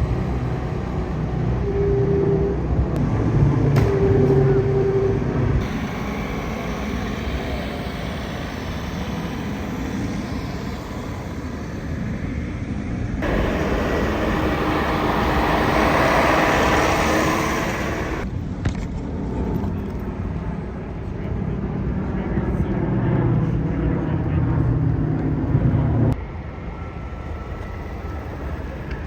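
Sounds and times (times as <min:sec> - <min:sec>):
vehicle engine running: 0:02.5 - 0:19.0
rushing sound: 0:04.9 - 0:18.3.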